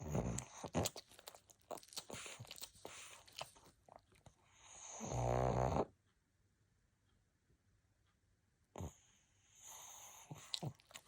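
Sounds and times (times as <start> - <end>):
dog snoring: 0.0 - 1.0, 4.5 - 5.9, 8.7 - 10.9.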